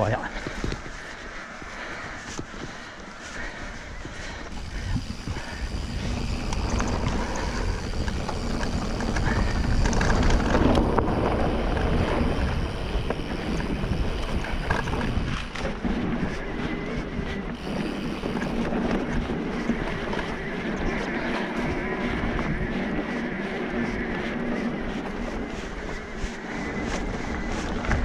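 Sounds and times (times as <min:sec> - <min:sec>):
tyres rumbling on rough trail: 0:00.0 - 0:28.0
wind buffeting microphone: 0:00.0 - 0:28.0
small ticks and rattles: 0:00.4 - 0:15.8.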